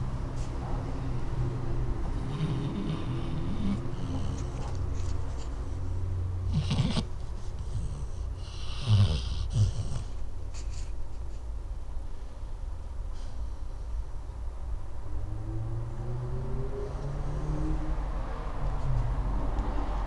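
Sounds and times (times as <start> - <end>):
dog snoring: 2.0 - 4.8, 6.4 - 10.2.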